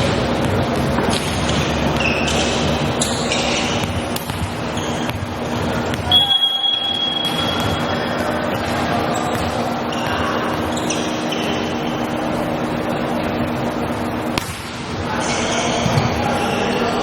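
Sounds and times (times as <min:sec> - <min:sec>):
crowd chatter in gym: 0:00.0 - 0:17.0
short squeaks: 0:09.9 - 0:12.1.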